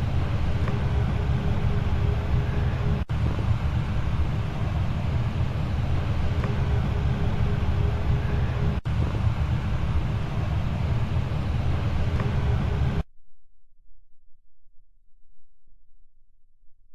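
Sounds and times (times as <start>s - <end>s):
faint steady hum: 0.0s - 13.1s
furnace low rumble: 0.0s - 13.1s.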